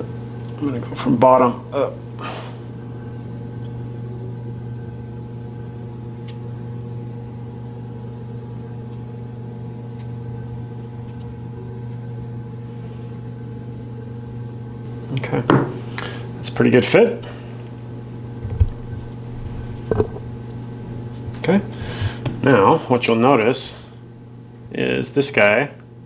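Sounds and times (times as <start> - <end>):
low machine hum: 0.0 - 26.0.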